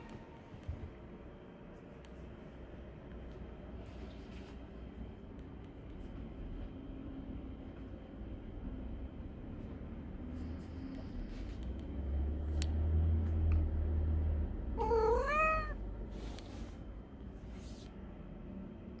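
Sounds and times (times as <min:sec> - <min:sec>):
low steady hum: 0:00.0 - 0:19.0
cat meowing: 0:14.8 - 0:15.8.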